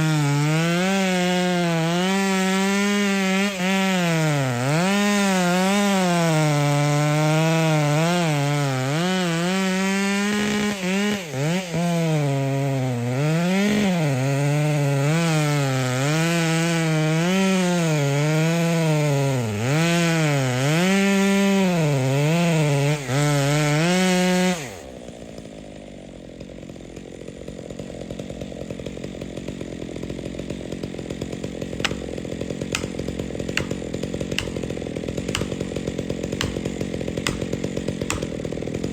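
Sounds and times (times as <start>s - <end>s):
chainsaw cutting wood: 0.0s - 38.9s
sharp cracks: 31.5s - 38.9s.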